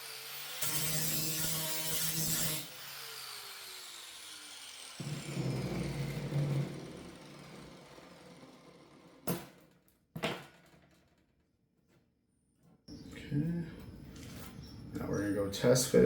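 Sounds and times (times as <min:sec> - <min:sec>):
power tool cutting sheet steel: 0:00.0 - 0:09.2
rough metal grinding burst: 0:04.2 - 0:09.3.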